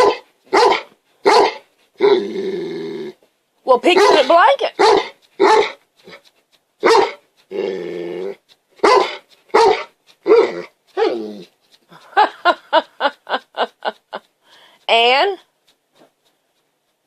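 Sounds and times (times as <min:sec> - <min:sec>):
dog calling: 0:00.0 - 0:01.7, 0:03.9 - 0:14.2
dog yipping: 0:00.0 - 0:01.7, 0:03.9 - 0:07.4, 0:08.2 - 0:11.8.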